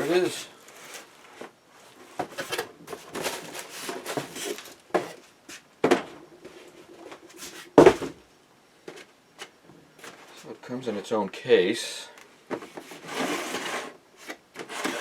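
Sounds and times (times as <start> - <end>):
rustling and scraping: 0.0 - 8.2, 12.5 - 15.0
heavy thump: 7.8 - 8.2.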